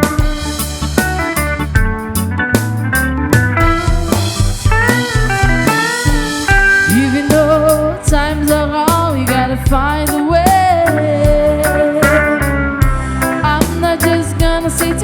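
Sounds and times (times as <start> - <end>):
deep bass line: 0.0 - 15.0
drums: 0.0 - 15.0
electric guitar melody: 0.0 - 15.0.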